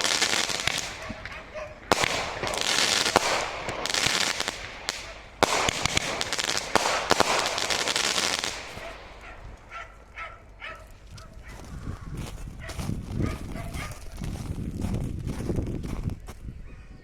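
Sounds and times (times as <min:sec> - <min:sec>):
fireworks crackling and popping: 0:00.0 - 0:10.1.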